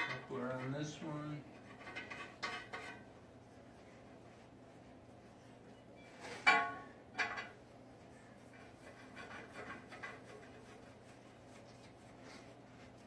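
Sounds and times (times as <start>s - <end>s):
metal pipe clanking: 6.3s - 7.6s.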